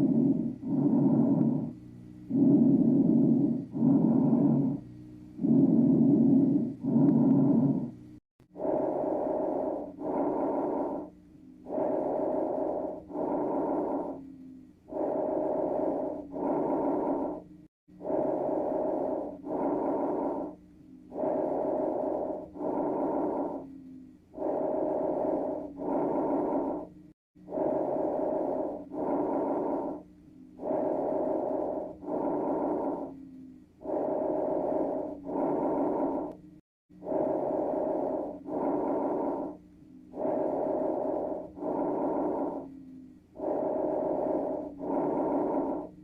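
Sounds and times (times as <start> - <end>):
breathing through stethoscope: 0.0 - 46.0.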